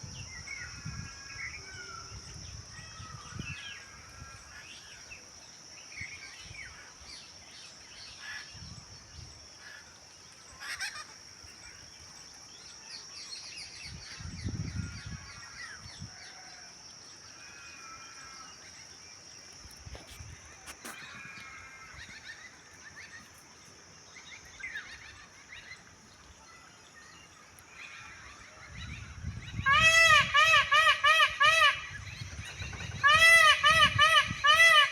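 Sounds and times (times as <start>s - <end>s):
high insect drone: 0.0s - 34.9s.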